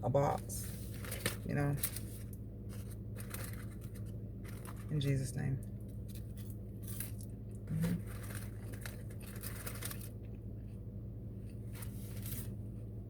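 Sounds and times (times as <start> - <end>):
steady low hum: 0.0 - 13.0
paper and cardboard packaging rustling: 0.2 - 5.2, 6.0 - 10.3, 11.6 - 12.6.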